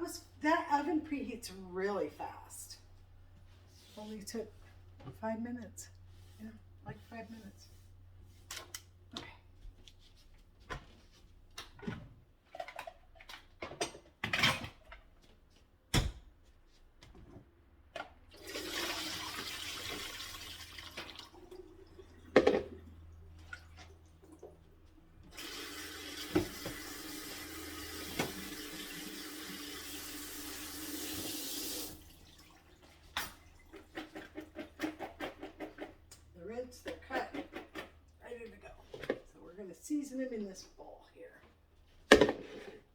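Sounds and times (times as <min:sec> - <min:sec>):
tap running water into sink: 0:25.3 - 0:32.4.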